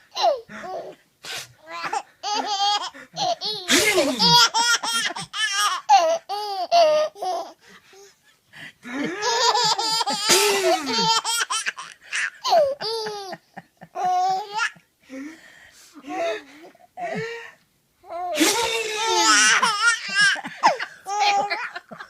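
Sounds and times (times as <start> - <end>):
baby laughing: 1.6 - 7.6, 9.0 - 14.8, 18.1 - 22.0
man pretend sneezing: 3.7 - 4.4, 10.2 - 10.9, 18.4 - 19.6.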